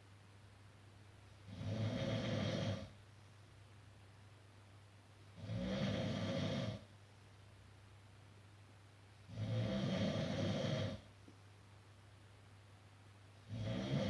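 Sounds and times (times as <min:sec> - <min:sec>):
person snoring: 0:01.5 - 0:02.9, 0:05.4 - 0:06.8, 0:09.3 - 0:11.0, 0:13.5 - 0:14.0.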